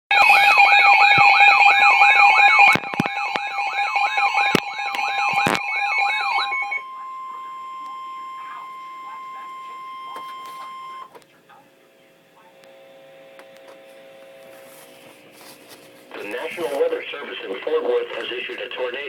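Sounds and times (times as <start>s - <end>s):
steady alarm tone: 0.1s - 11.1s
warbling electronic alert tones: 0.1s - 11.1s.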